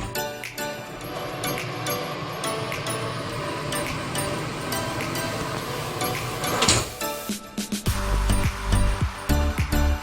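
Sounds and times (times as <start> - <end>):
background music with percussive beat: 7.0 - 10.0.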